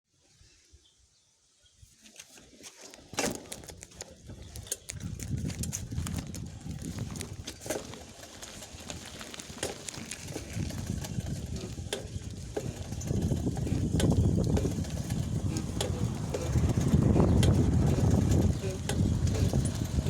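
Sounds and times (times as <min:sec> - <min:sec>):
bicycle rolling rumble: 0:02.2 - 0:20.0
pedal knocking on bike: 0:04.2 - 0:20.0.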